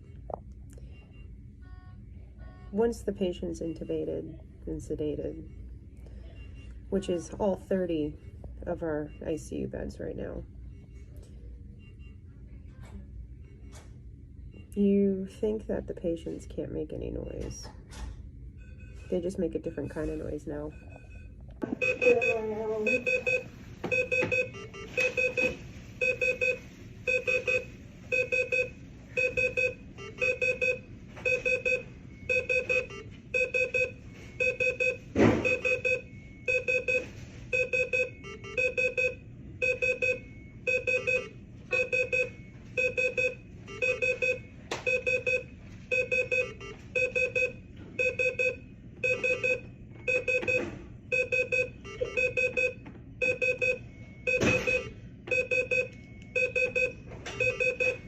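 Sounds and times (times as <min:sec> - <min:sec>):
two-tone equipment alarm beeps: 0:18.6 - 0:58.0.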